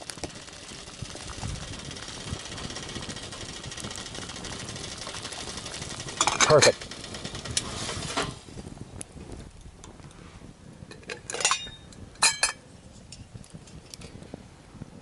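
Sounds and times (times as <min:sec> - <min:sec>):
metal cooking pot clinking: 0:10.9 - 0:12.6.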